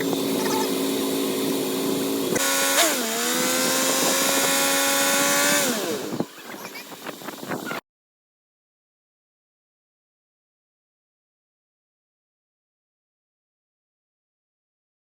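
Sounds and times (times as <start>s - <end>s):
motor running: 0.0s - 7.8s.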